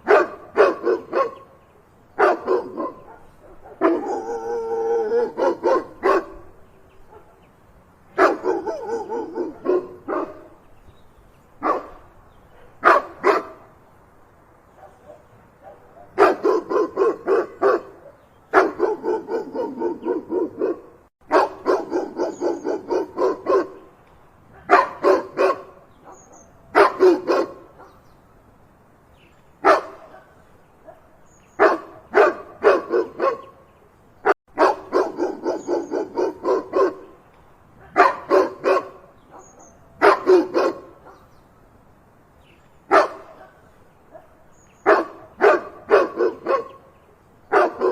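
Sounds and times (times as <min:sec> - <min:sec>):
dog barking: 0:00.0 - 0:01.5, 0:02.2 - 0:07.4, 0:08.2 - 0:10.6, 0:11.6 - 0:13.6, 0:14.7 - 0:23.8, 0:24.6 - 0:28.0, 0:29.6 - 0:33.5, 0:34.2 - 0:37.2, 0:37.8 - 0:41.3, 0:42.9 - 0:46.8, 0:47.5 - 0:47.9.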